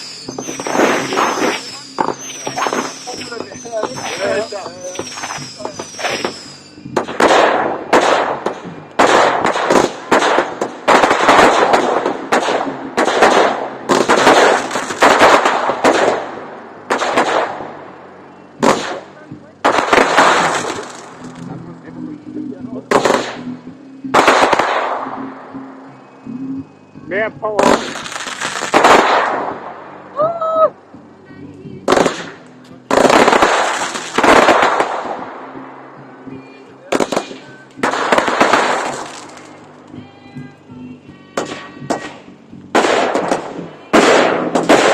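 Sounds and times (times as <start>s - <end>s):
fireworks bangs with crackling: 0.0s - 25.6s, 27.4s - 30.3s, 31.4s - 44.9s
person shouting: 30.2s - 30.8s.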